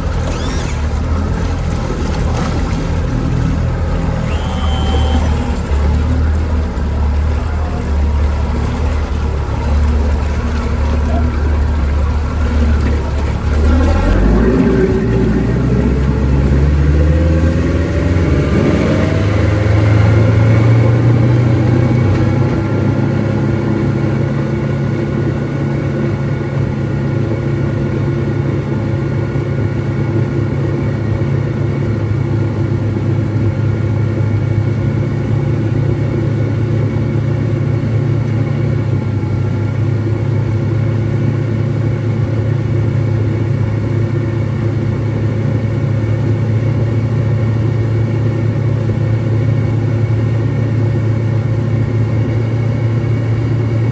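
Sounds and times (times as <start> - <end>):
outboard motor running: 0.0 - 53.9.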